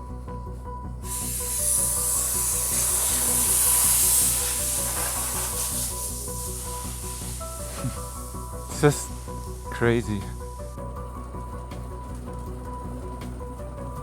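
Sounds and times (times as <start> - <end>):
background music with steady beat: 0.0 - 14.0
loud hiss: 1.0 - 10.9.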